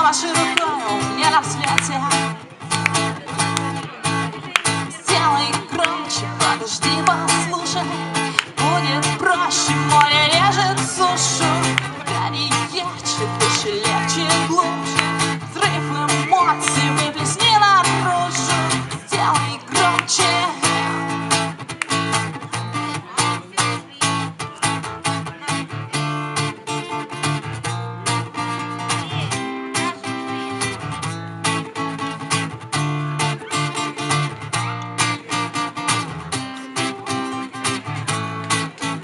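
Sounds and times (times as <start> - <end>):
acoustic guitar strumming: 0.0 - 39.0.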